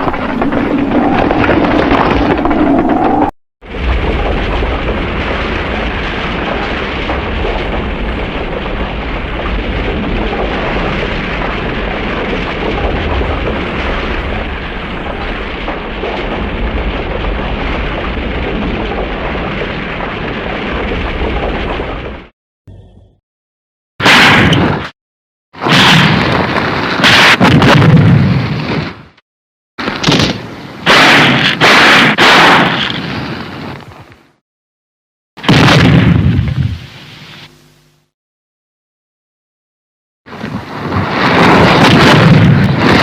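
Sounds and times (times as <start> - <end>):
deep rumbling roar: 0.0 - 22.3.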